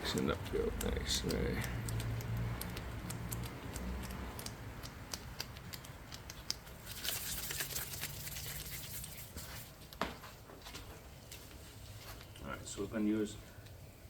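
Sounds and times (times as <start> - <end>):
hands kneading putty clicks: 0.1 - 6.8
scratchy hiss: 6.8 - 9.9.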